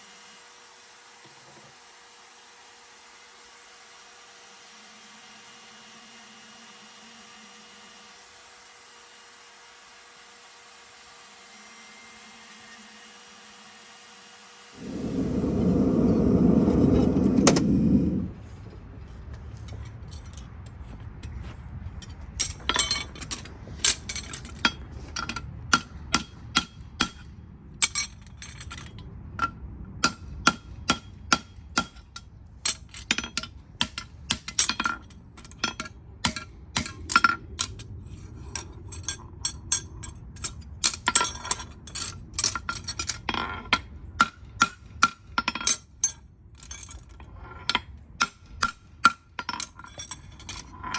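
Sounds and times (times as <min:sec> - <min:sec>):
loud low rumbling: 0:14.8 - 0:19.0
metallic clicks of hand tools: 0:22.4 - 0:50.9.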